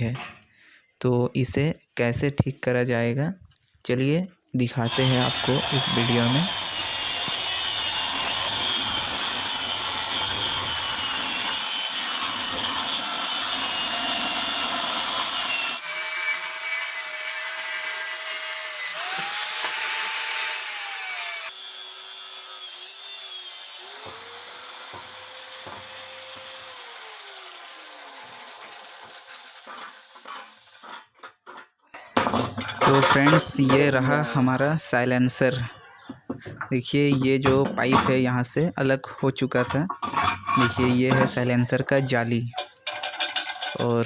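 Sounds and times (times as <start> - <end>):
angle grinder cutting steel: 4.8 - 31.2, 39.5 - 44.0.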